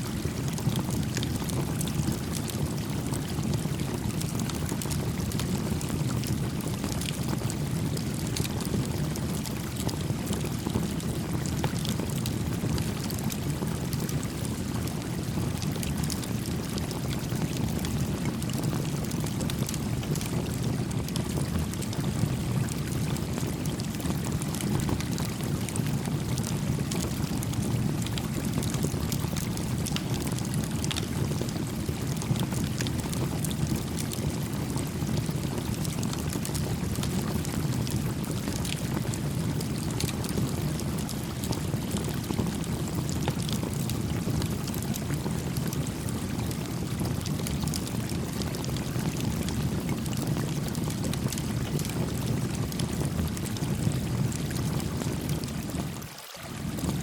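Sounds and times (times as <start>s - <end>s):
campfire crackling and popping: 0.3s - 55.8s
creek flowing: 55.6s - 57.0s.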